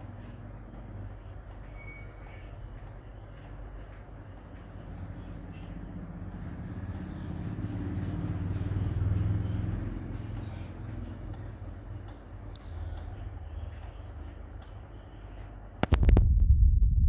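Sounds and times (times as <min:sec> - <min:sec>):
vehicle passing by rumble: 0:05.0 - 0:11.5.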